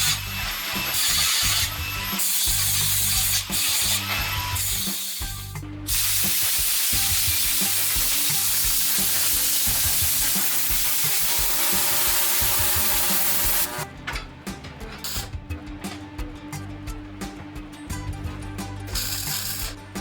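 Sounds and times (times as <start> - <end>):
background music: 0.0 - 20.0
spraying hiss: 5.9 - 13.8.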